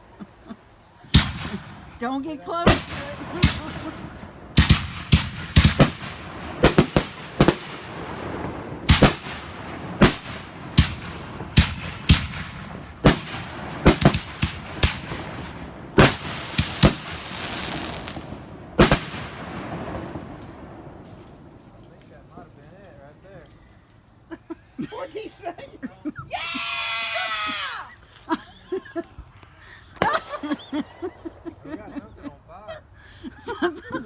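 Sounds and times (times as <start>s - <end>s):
firework bangs: 1.0s - 22.2s
firework crackling hiss: 2.7s - 19.8s.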